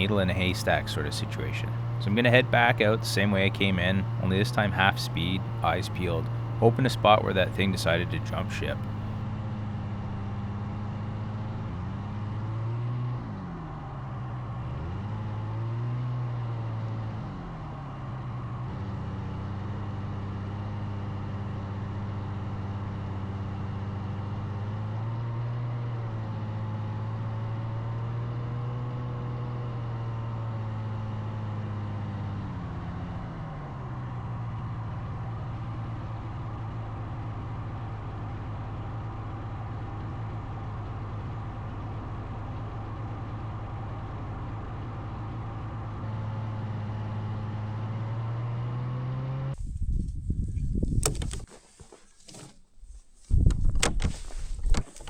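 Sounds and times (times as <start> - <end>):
snowmobile engine running: 0.0 - 9.2.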